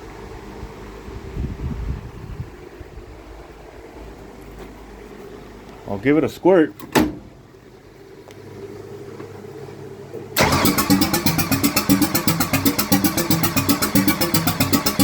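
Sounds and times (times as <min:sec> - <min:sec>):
engine cranking on starter: 0:10.3 - 0:15.0.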